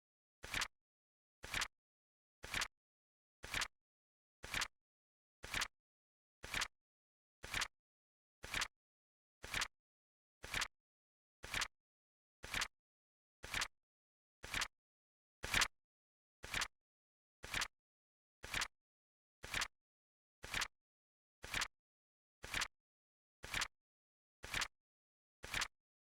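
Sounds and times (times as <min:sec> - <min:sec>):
flip clock clicks: 0:25.5 - 0:25.7.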